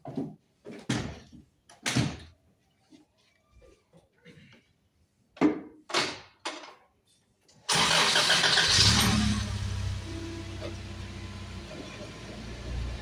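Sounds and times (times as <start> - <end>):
car engine starting and idling: 7.7 - 13.0.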